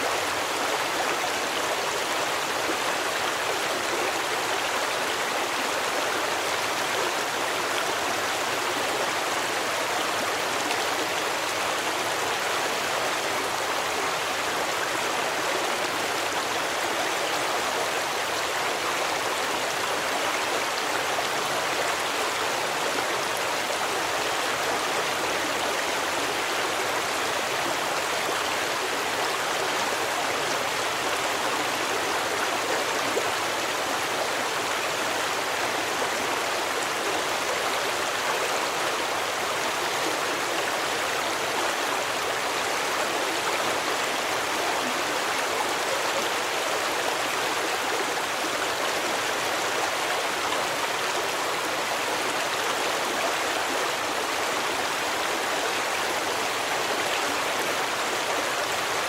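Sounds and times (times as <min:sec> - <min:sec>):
stream water rushing: 0:00.0 - 0:59.0.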